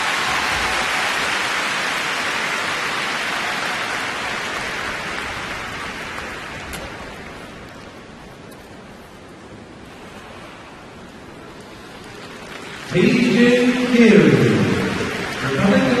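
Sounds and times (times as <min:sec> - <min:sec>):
crowd applauding: 0:00.0 - 0:08.0, 0:11.6 - 0:16.0.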